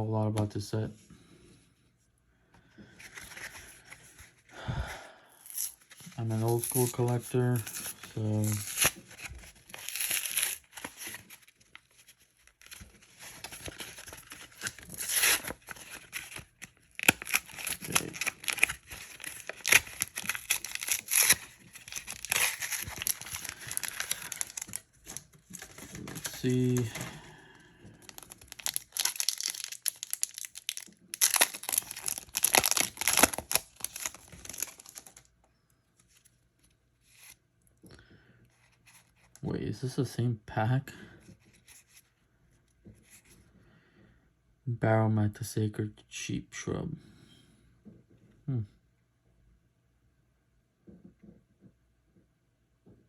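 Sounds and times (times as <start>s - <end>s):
trading cards rustling: 5.4s - 35.3s
foil wrapper crinkling: 5.5s - 27.3s, 27.9s - 35.3s.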